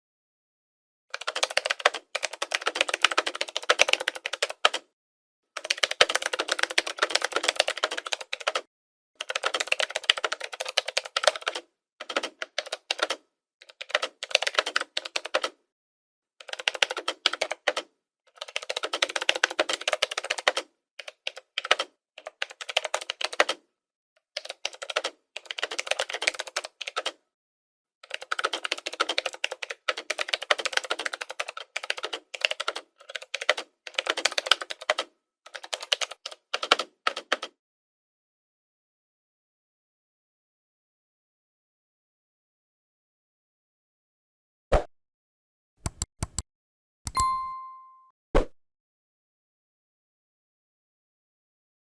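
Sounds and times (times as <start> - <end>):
computer keyboard typing: 1.1 - 4.8, 5.6 - 15.6, 16.4 - 23.6, 24.4 - 27.2, 28.0 - 37.5, 45.8 - 46.4, 47.1 - 48.0.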